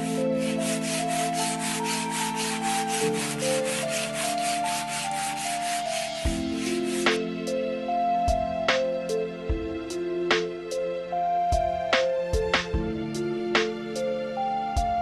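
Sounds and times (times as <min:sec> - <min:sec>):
sandpaper rubbing on plastic: 0:00.0 - 0:07.2.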